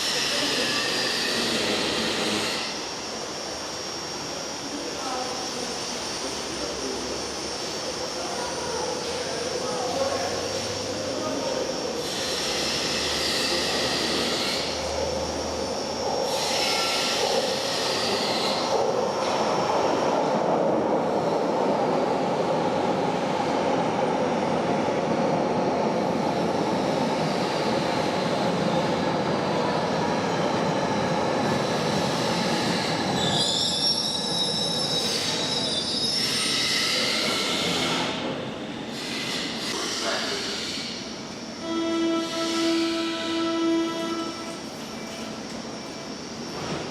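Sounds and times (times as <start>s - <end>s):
train wheels squealing: 0.0s - 3.0s, 9.2s - 15.6s, 16.2s - 20.0s, 26.8s - 46.8s
train rumbling on track: 0.0s - 46.9s.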